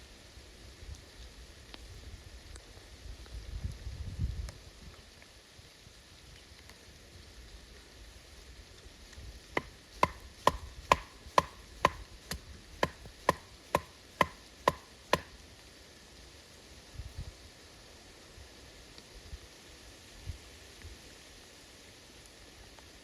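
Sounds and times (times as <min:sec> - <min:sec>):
tool striking wood: 0:09.6 - 0:15.3.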